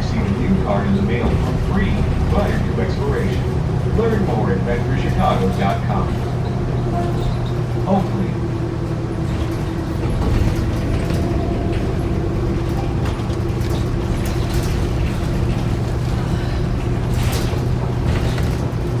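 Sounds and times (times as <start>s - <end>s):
bus engine drone: 0.0s - 19.0s
clicks and rattles of bus body: 0.0s - 19.0s
low hum: 6.0s - 18.2s.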